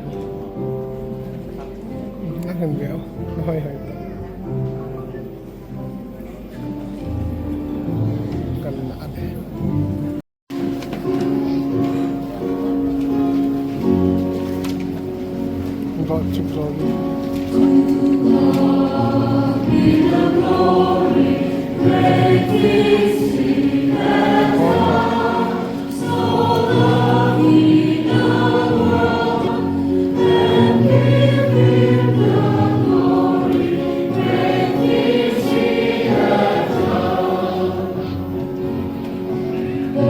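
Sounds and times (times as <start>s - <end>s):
choir singing a hymn: 17.3s - 40.0s.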